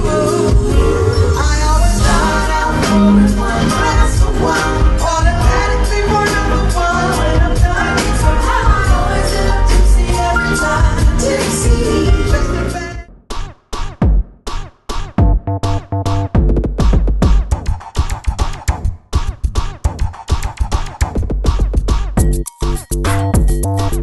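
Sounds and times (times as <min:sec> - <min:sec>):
upbeat pop soul music with singing: 0:00.0 - 0:13.1.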